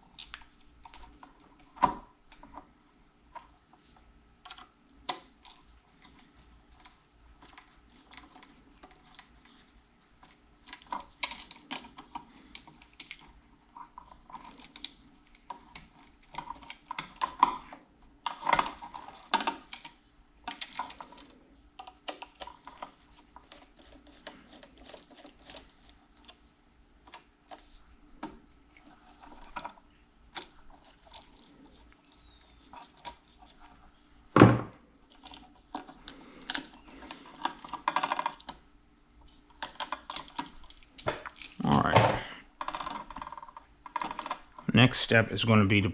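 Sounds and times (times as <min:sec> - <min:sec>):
loud knock: 0:34.4 - 0:34.7.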